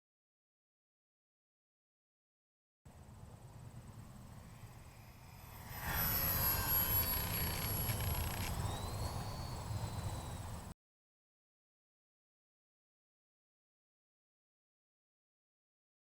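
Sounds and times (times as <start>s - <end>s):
low rumble of wind: 2.9s - 10.7s
model plane electric motors whining: 4.2s - 10.7s.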